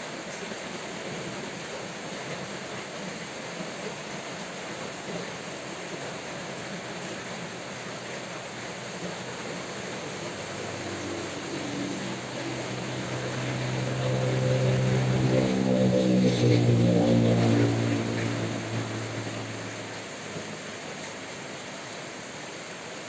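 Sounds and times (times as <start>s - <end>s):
steady rain falling: 0.0s - 23.0s
low engine hum: 7.1s - 21.9s.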